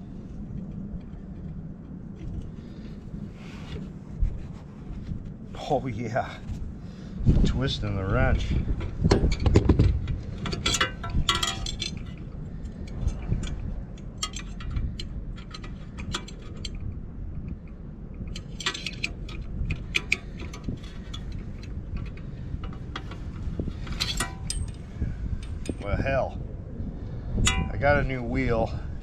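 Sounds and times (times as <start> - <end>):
wind rumble on microphone: 0.0 - 29.0
wrench clinking on metal parts: 10.4 - 16.8, 18.3 - 25.9, 27.4 - 27.8.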